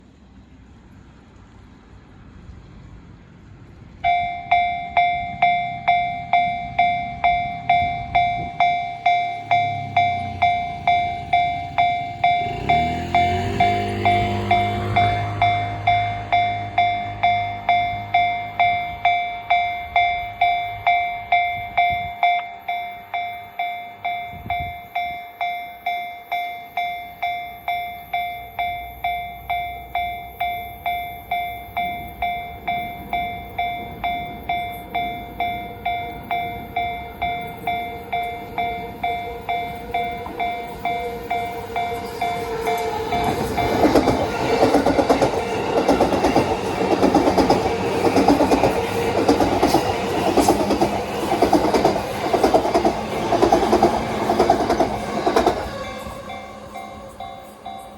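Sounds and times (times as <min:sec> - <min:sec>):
train rumble and wheel clatter: 0:00.0 - 0:57.9
level-crossing warning bell: 0:04.0 - 0:57.9.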